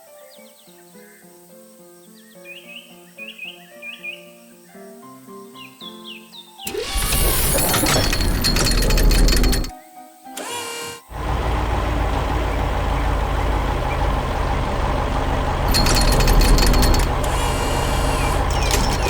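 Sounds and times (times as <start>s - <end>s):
heavy vehicle engine running: 6.7s - 9.7s, 11.1s - 19.0s
rapid rattling hammering: 6.7s - 9.7s, 15.1s - 19.0s.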